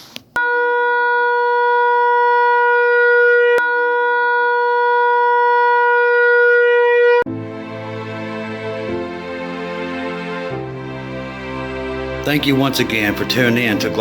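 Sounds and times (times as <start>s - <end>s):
steady horn blast: 5.6s - 14.0s.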